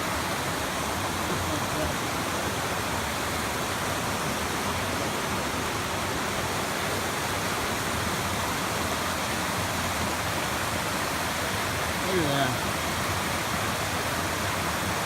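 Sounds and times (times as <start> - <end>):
river cascading over rock: 0.0 - 15.0.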